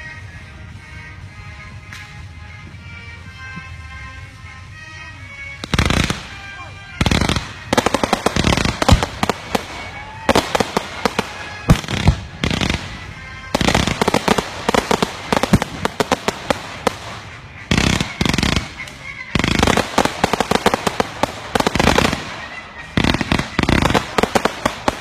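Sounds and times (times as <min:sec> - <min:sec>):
fireworks crackling: 0:04.6 - 0:25.0
fireworks bangs: 0:05.6 - 0:25.0.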